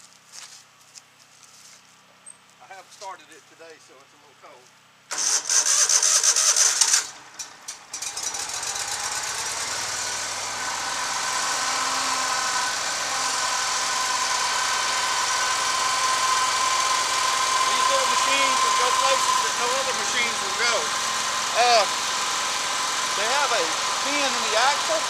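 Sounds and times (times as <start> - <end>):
electric starter cranking: 5.1 - 25.0
engine running: 5.1 - 25.0.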